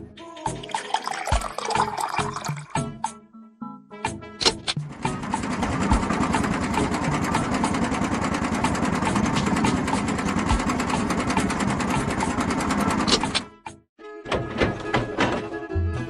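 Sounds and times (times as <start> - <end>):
small engine clattering: 4.8 - 13.4.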